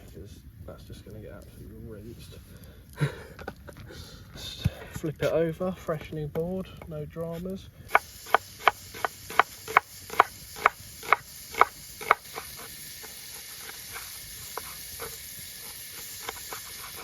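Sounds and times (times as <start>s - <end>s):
meat sizzling in a pan: 7.9s - 17.0s.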